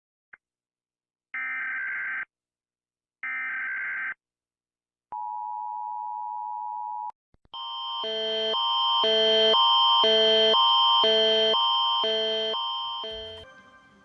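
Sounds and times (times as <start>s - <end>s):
two-tone attention signal: 8.0s - 13.6s.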